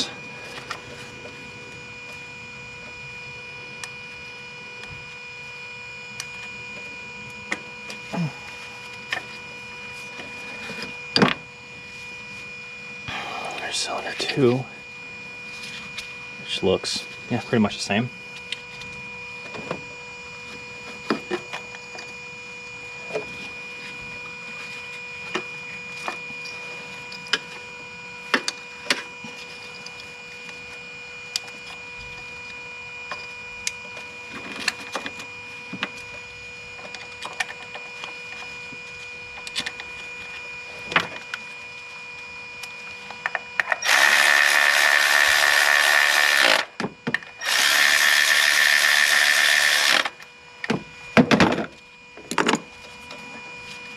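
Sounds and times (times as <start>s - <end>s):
loud power tool running: 0.0s - 1.8s, 43.3s - 51.7s
steady background hum: 0.0s - 53.9s.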